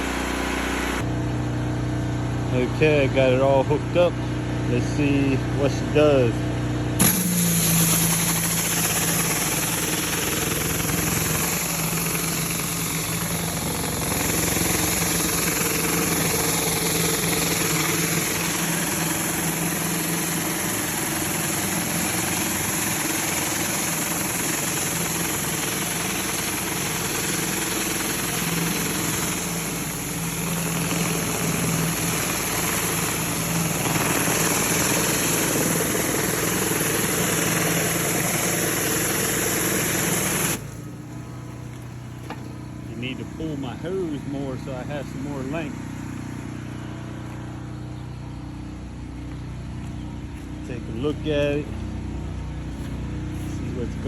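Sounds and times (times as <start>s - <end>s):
pressure washer engine hum: 0.0s - 54.0s.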